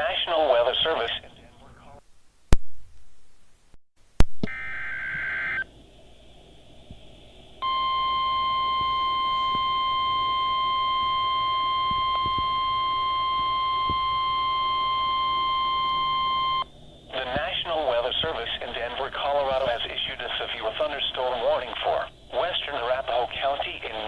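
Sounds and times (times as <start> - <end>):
steady warning alarm tone: 7.6 - 24.0.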